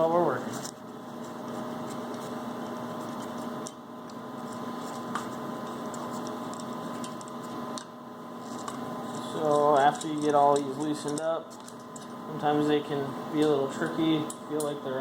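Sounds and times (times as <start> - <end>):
steady hum with hiss: 0.0 - 15.0
hand tools clicking on metal: 9.4 - 12.1.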